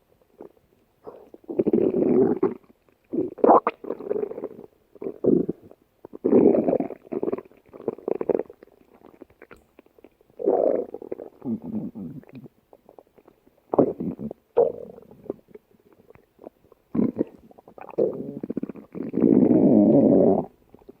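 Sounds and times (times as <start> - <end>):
stomach growling and gurgling: 0.4 - 21.0.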